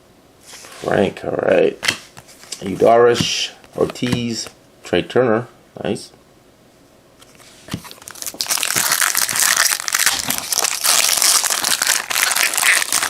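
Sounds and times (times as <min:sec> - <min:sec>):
wrapper tearing and crinkling: 0:07.8 - 0:13.0.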